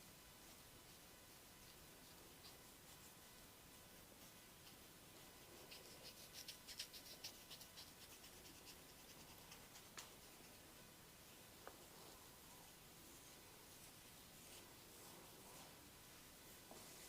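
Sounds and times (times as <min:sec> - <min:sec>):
hands scratching skin and hair: 0:04.0 - 0:10.7.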